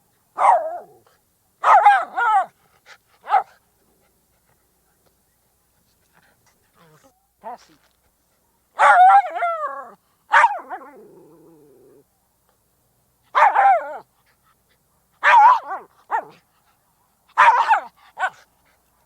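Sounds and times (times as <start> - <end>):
dog barking: 0.4 - 0.9, 1.6 - 2.5, 3.2 - 3.6, 8.8 - 9.5, 10.3 - 10.9, 13.3 - 14.0, 15.2 - 16.4, 17.4 - 18.4
dog yelp: 17.4 - 18.4.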